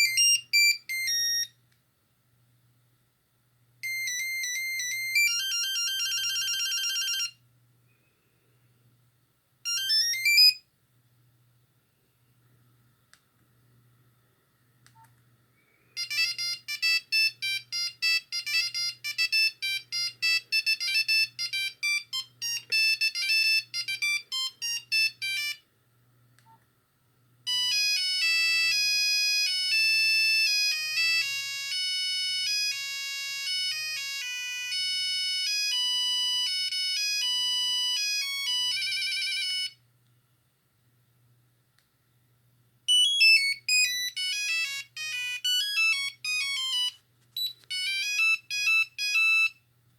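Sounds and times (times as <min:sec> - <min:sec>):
phone ringtone tunes: 0:00.0 - 0:01.5, 0:03.8 - 0:07.4, 0:09.7 - 0:10.6, 0:16.0 - 0:25.6, 0:27.5 - 0:39.8, 0:42.9 - 0:49.6.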